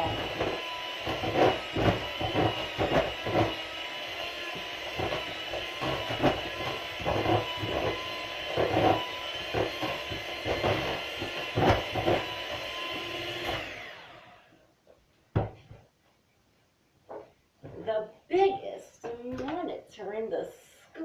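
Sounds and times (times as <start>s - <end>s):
mixer beaters knocking and scraping: 0.0s - 14.0s
electric mixer motor running: 0.0s - 14.5s.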